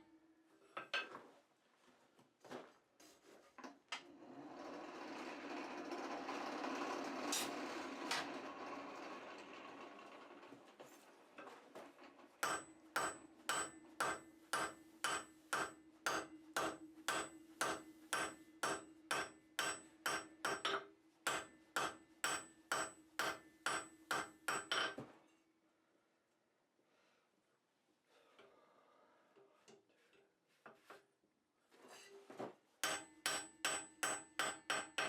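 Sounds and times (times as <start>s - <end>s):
anvil ringing: 12.4s - 24.9s
hammer striking anvil: 12.4s - 25.0s, 32.8s - 35.0s.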